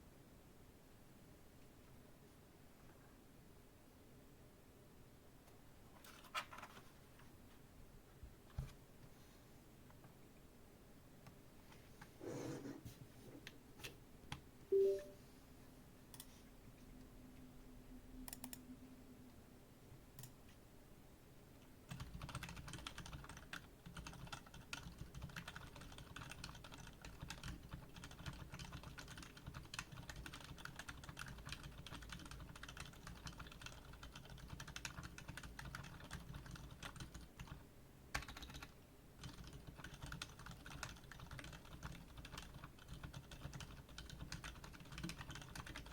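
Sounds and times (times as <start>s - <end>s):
keyboard typing: 14.7s - 15.2s, 18.2s - 18.6s, 21.9s - 45.9s
brief tone: 14.7s - 15.3s.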